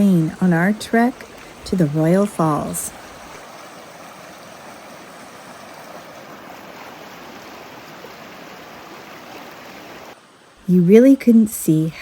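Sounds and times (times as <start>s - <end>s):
creek water flowing: 0.0s - 12.0s.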